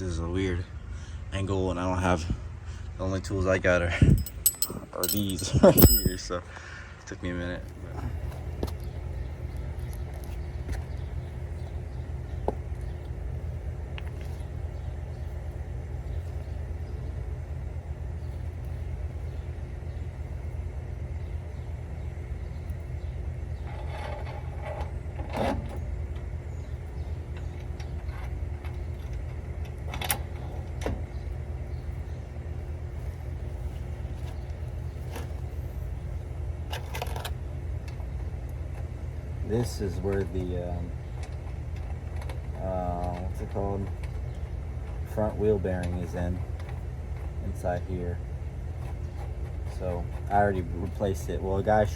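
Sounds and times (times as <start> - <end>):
steady low hum: 3.8 - 24.6
hand tools clinking and knocking: 4.0 - 6.4.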